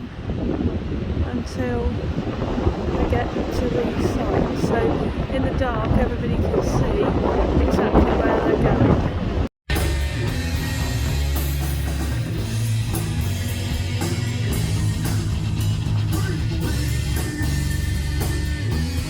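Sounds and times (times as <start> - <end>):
rock band playing: 9.7 - 19.0.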